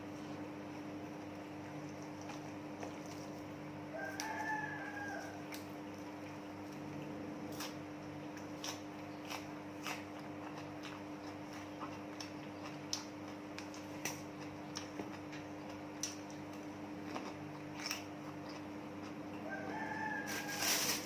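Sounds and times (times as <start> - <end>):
rooster crowing: 3.8 - 5.6, 19.4 - 21.0.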